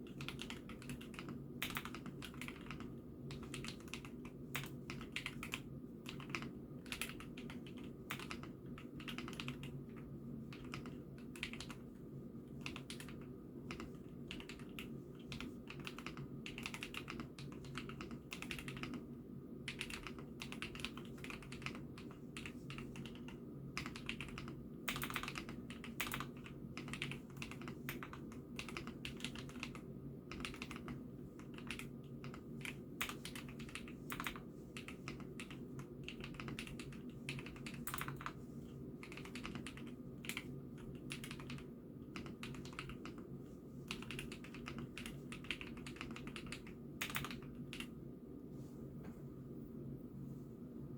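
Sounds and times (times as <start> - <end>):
mechanical keyboard typing: 0.0 - 11.8, 12.6 - 19.0, 19.7 - 38.4, 39.0 - 43.2, 43.9 - 47.9
low steady hum: 0.0 - 50.9.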